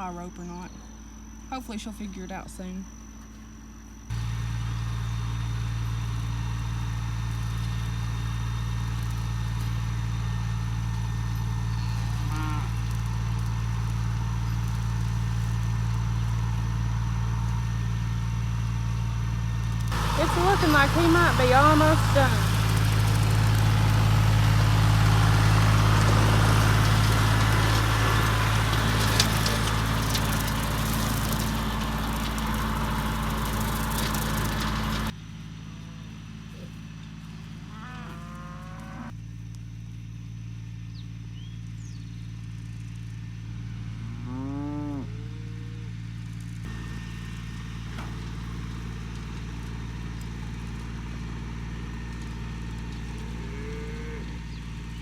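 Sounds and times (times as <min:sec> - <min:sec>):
engine running: 0:00.0 - 0:55.0
cows mooing: 0:12.1 - 0:12.9, 0:37.6 - 0:39.1, 0:44.0 - 0:45.9, 0:53.4 - 0:54.5.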